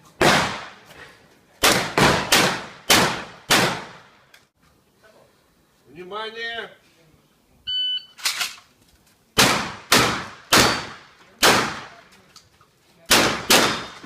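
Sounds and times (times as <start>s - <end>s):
shotgun shots: 0.2s - 0.8s, 1.6s - 4.2s, 9.4s - 12.0s, 13.1s - 14.0s.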